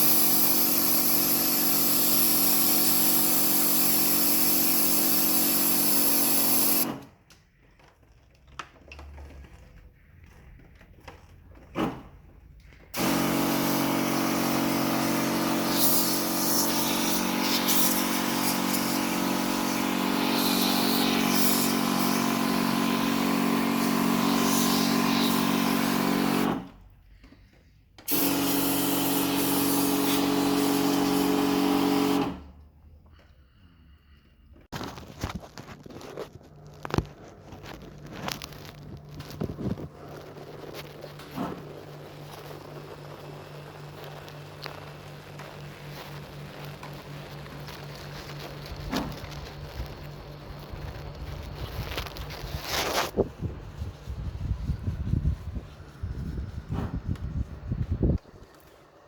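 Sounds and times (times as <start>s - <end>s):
cleaning machine motor humming: 13.0s - 26.6s, 28.1s - 32.3s.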